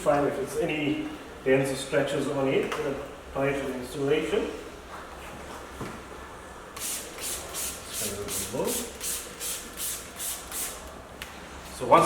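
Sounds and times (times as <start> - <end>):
spray bottle spraying: 6.8 - 10.9.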